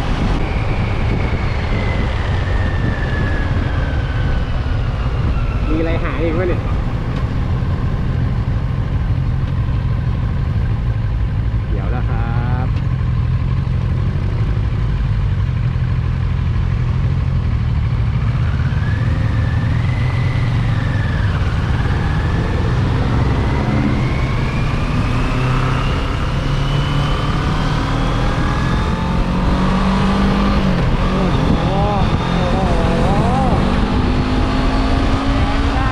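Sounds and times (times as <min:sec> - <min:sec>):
wind noise: 0:00.0 - 0:11.0, 0:18.4 - 0:35.9
motorcycle engine accelerating: 0:00.0 - 0:35.9.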